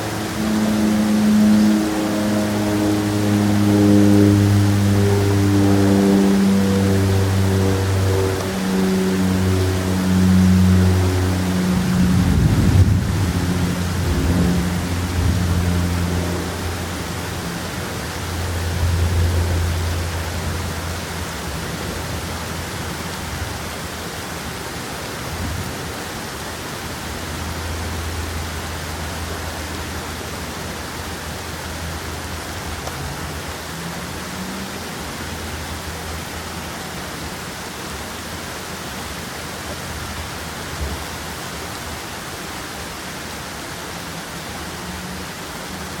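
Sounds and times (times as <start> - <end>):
low rumble: 0.0 - 24.1, 25.1 - 33.9
steady rain: 0.0 - 46.0.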